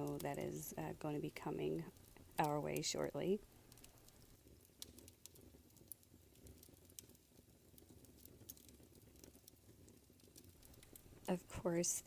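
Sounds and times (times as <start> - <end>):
faint clicks: 10.2 - 11.3.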